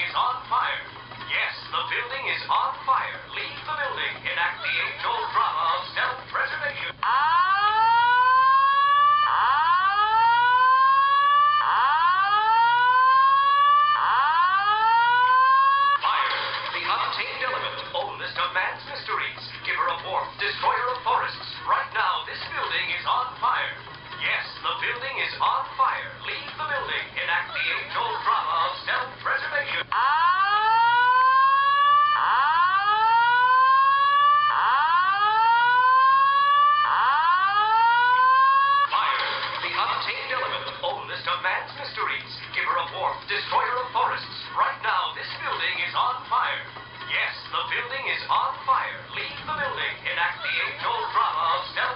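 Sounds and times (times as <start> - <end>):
fire alarm whoop tone: 7.0 - 16.8, 29.9 - 39.6.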